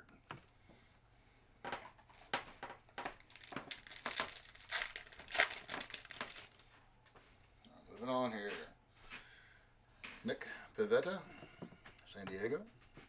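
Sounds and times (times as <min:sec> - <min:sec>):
plastic wrapper crinkling: 0:01.9 - 0:06.7.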